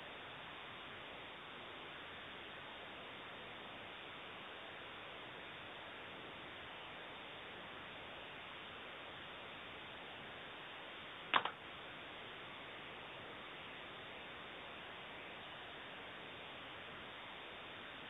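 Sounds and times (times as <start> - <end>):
low recording hiss: 0.0 - 18.0
sharp click or knock: 11.3 - 11.6.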